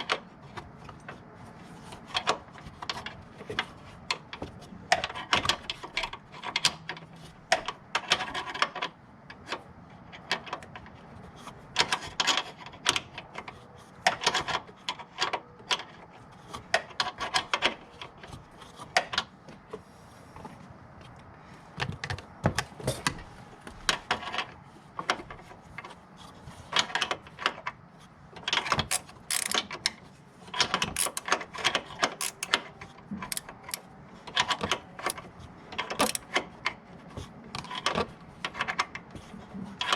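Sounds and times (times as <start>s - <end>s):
ratchet wrench clicking: 28.9s - 29.6s, 31.0s - 31.4s, 32.2s - 32.7s, 33.3s - 33.9s, 36.0s - 36.3s.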